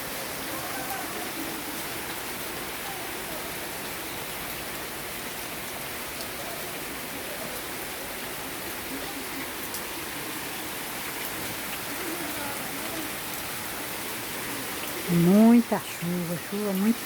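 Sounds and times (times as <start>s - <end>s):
heavy rain falling: 0.0s - 17.0s.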